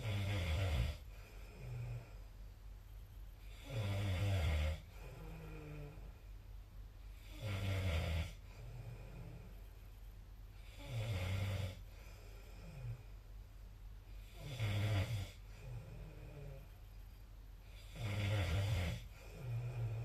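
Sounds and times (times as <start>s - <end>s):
person snoring: 0.0s - 2.2s, 3.4s - 6.1s, 7.1s - 9.5s, 10.6s - 13.1s, 14.2s - 16.7s, 17.7s - 20.0s
soft breath: 0.9s - 4.0s, 11.7s - 13.3s.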